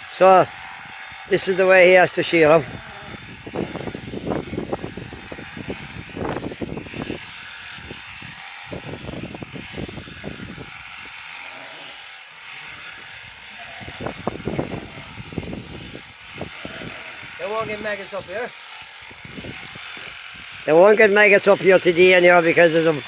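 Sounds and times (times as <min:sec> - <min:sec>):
shearing handpiece buzzing: 0:00.0 - 0:23.0
wind buffeting microphone: 0:02.0 - 0:11.3, 0:12.4 - 0:18.4, 0:19.0 - 0:21.6.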